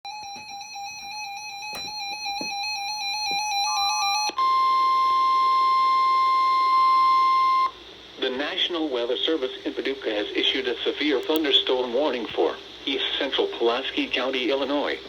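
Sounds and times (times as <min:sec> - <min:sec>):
steady warning alarm tone: 0:00.1 - 0:07.8.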